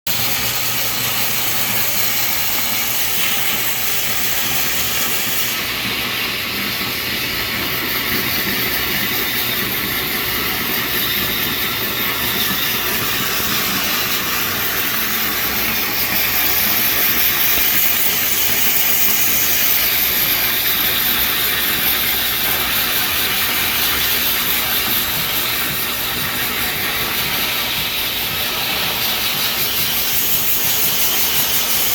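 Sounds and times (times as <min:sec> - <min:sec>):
cleaning spray jet hissing: 0:08.9 - 0:31.9.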